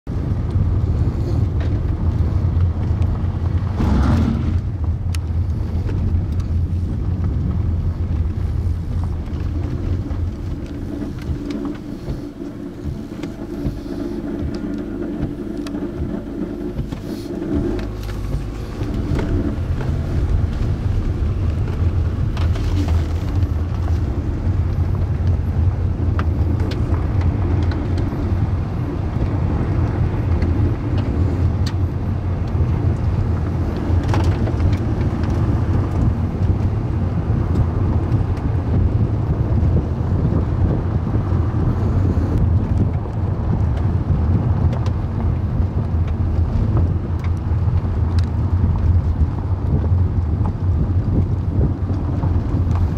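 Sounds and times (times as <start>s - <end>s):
car engine rumbling: 0.0s - 52.9s
faint engine tone: 8.5s - 25.6s.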